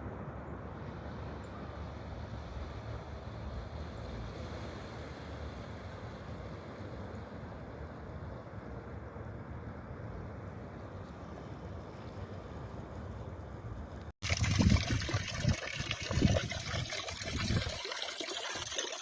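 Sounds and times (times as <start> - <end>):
flowing water rushing: 13.7 - 19.0.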